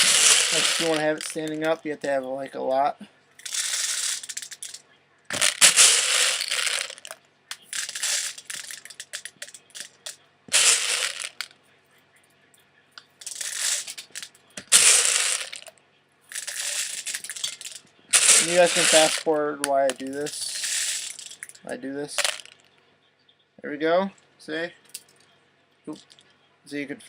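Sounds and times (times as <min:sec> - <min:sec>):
plastic pellets rattling in bottle: 0:00.0 - 0:02.0, 0:03.4 - 0:11.5, 0:13.1 - 0:15.7, 0:16.3 - 0:22.7, 0:25.9 - 0:26.2.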